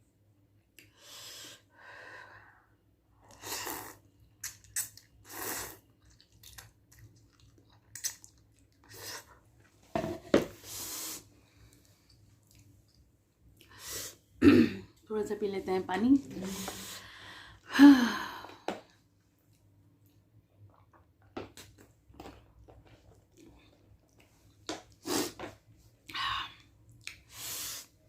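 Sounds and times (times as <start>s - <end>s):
person chewing food: 4.2s - 9.4s, 11.6s - 13.8s, 21.6s - 25.1s.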